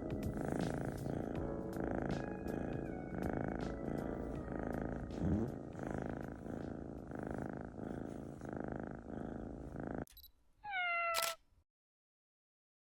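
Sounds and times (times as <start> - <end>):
kitten purring: 0.0 - 10.1.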